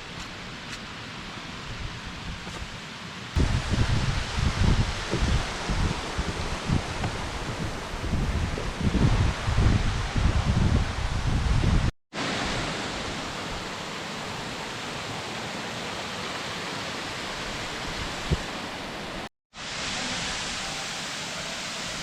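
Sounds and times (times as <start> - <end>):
waterfall rushing: 3.4 - 11.0, 12.2 - 22.0
wind rumble on microphone: 3.4 - 11.9, 17.4 - 19.2.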